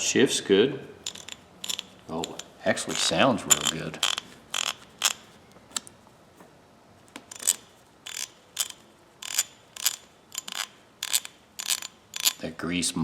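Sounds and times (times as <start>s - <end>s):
ratchet clicking: 1.0s - 5.3s, 7.3s - 12.5s.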